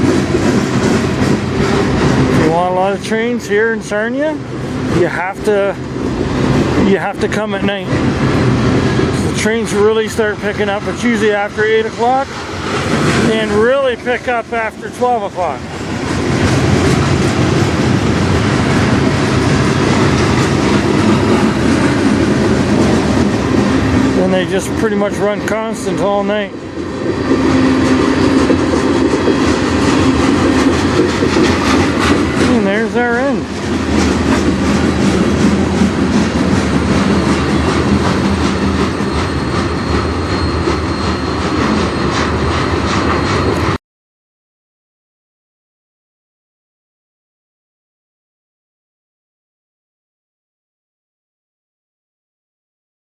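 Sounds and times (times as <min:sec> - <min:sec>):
train wheels rumbling on rails: 0:00.0 - 0:43.8
wheels clicking over rail joints: 0:28.2 - 0:40.1.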